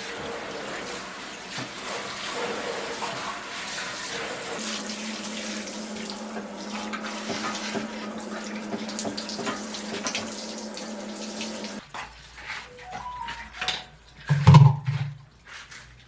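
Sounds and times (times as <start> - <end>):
water running from a tap: 0.0 - 11.8.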